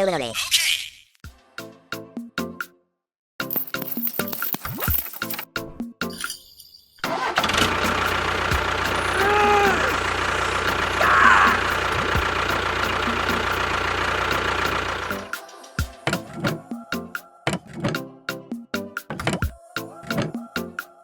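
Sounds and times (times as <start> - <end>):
motor running: 7.4 - 15.3.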